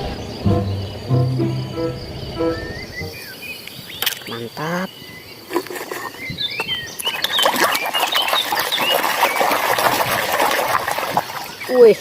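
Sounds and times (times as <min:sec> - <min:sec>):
high squeaky chirps: 0:00.5 - 0:03.3
splashing water and scrubbing: 0:07.0 - 0:12.0.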